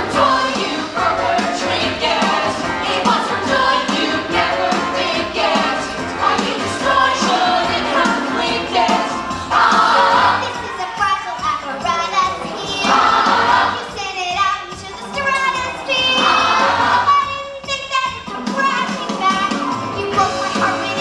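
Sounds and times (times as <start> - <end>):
instrumental accompaniment: 0.0 - 14.0
group singing show tune: 0.0 - 17.2, 18.3 - 21.0.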